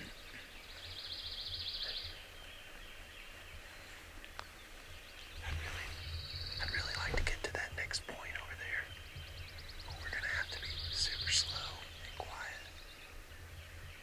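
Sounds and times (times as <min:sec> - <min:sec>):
faint low rumble: 0:03.8 - 0:14.0
songbird trilling: 0:05.0 - 0:14.0.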